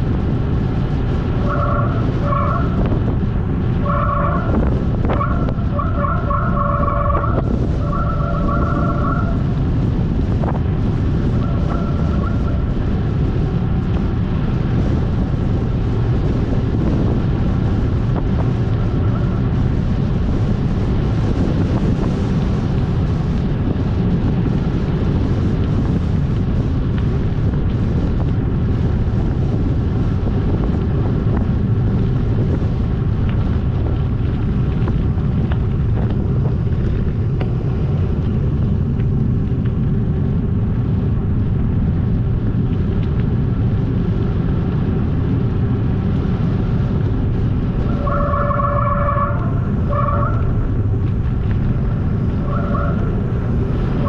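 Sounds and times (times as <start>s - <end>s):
wind buffeting microphone: 0.0s - 54.0s.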